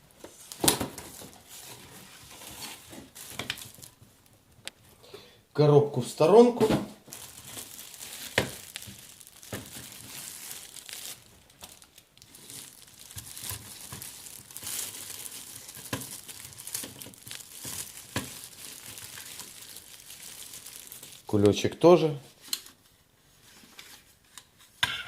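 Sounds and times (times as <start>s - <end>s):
plastic packaging crinkling: 0.3s - 4.8s, 7.0s - 21.7s.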